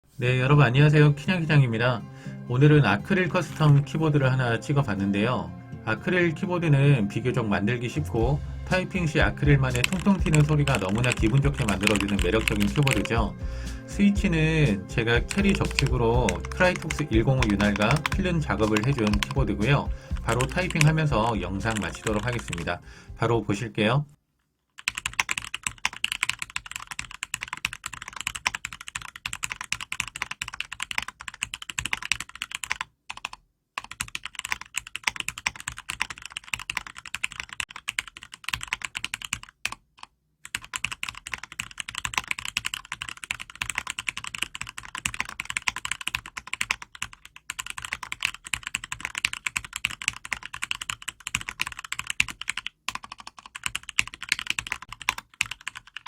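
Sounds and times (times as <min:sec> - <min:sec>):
mechanical keyboard typing: 0:09.0 - 0:13.3, 0:15.2 - 0:22.7, 0:24.8 - 0:56.0.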